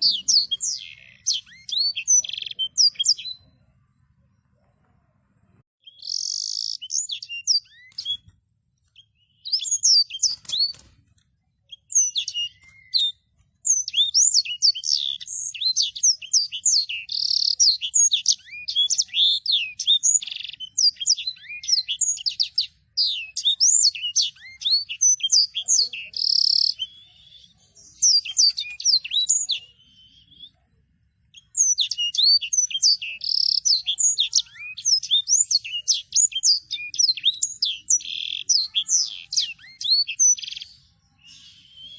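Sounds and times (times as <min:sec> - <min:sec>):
songbird singing whistled runs: 0:00.0 - 0:03.6, 0:05.8 - 0:11.0, 0:11.6 - 0:30.6, 0:31.2 - 0:41.9.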